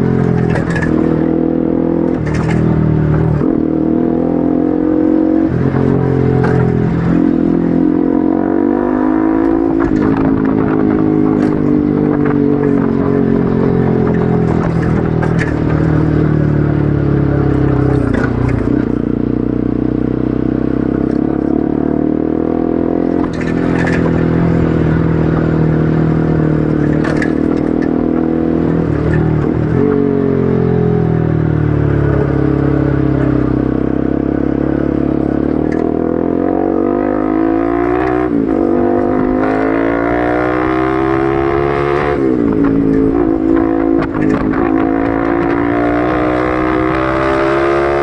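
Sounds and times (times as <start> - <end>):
motorcycle engine accelerating: 0.0 - 48.0.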